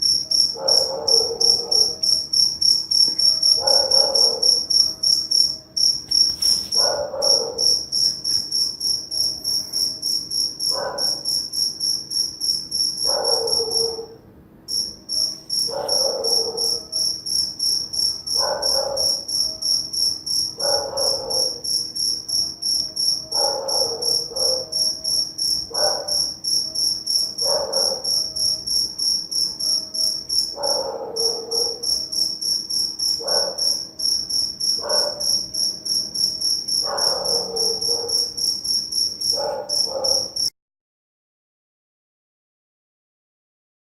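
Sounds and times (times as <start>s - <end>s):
crickets chirping: 0.0s - 40.5s
dog barking: 0.5s - 2.2s, 3.2s - 4.9s, 6.5s - 7.9s, 10.7s - 11.3s, 13.0s - 14.2s, 15.2s - 17.1s, 18.3s - 19.4s, 20.6s - 21.6s, 23.3s - 25.0s, 25.7s - 26.4s, 27.4s - 28.4s, 30.4s - 32.0s, 33.2s - 33.9s, 34.8s - 35.4s, 36.8s - 38.4s, 39.3s - 40.5s.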